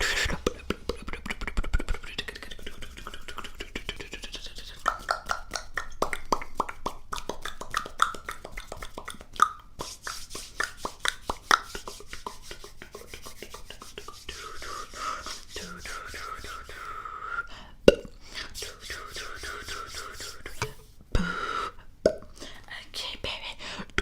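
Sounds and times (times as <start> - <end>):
wet mouth clicks and pops: 4.8 - 11.7, 17.9 - 18.2, 22.0 - 22.3.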